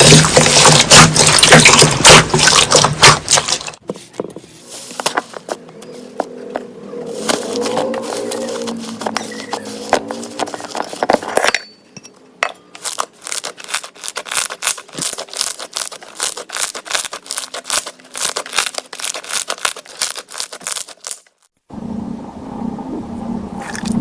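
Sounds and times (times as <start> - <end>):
slime crackling and popping: 0.0 - 3.8, 12.8 - 21.3.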